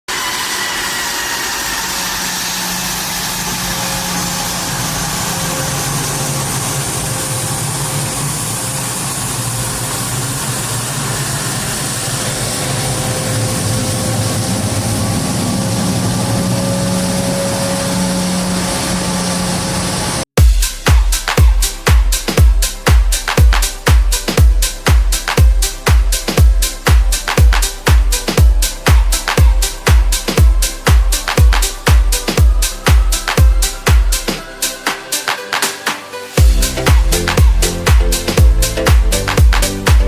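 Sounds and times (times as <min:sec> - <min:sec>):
jet engine running: 0:00.1 - 0:20.3.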